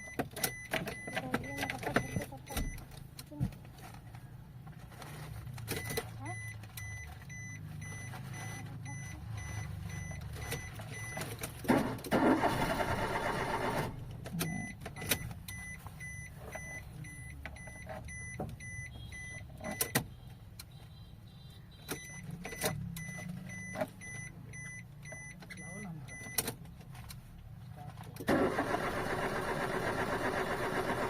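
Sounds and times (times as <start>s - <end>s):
short electronic beeps: 0.0s - 2.8s, 5.8s - 11.2s, 14.4s - 26.4s.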